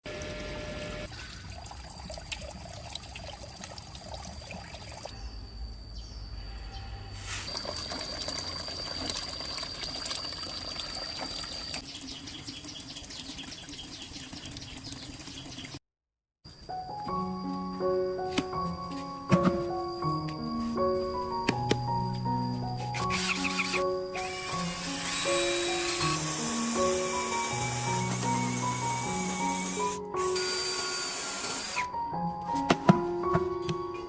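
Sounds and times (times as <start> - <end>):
water running and splashing: 1.1 - 5.1, 7.5 - 15.8.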